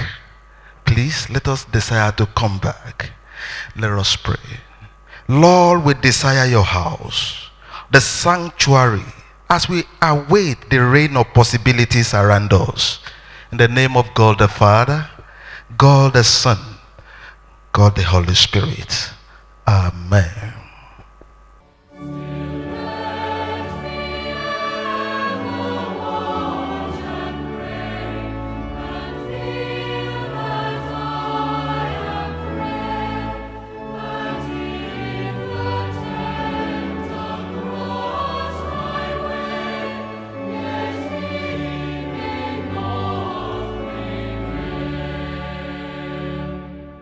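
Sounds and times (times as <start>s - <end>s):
choir singing: 5.3s - 12.9s, 13.6s - 15.1s, 22.0s - 47.0s.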